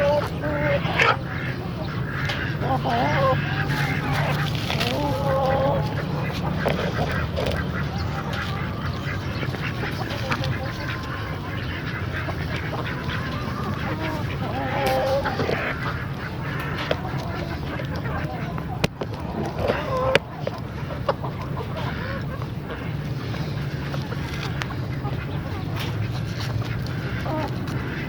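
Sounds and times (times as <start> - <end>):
fowl calling: 0.0 - 28.0
steady low rumble: 0.0 - 28.0.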